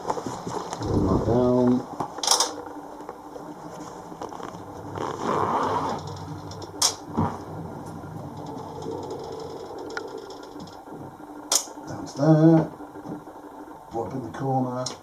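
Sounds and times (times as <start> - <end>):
soft rustle: 3.4 - 6.1.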